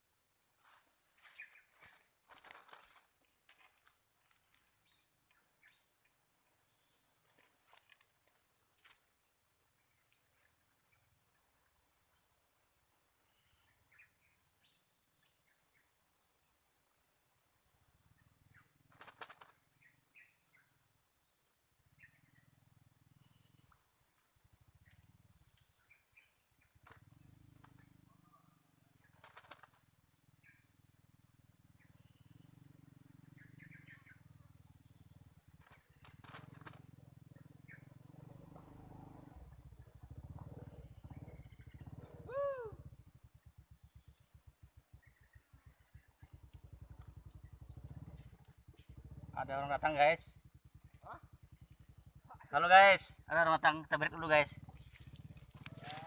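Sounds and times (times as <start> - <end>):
high-pitched insect drone: 26.9 - 56.0.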